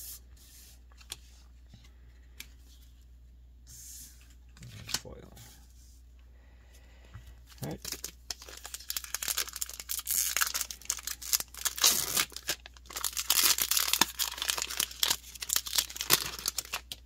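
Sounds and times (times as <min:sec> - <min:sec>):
foil wrapper tearing and crinkling: 0:07.6 - 0:17.0.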